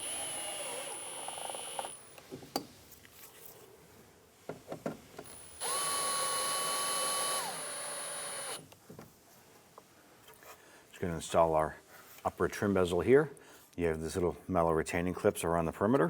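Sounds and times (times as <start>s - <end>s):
power drill whining: 0.0s - 2.2s, 5.3s - 8.7s.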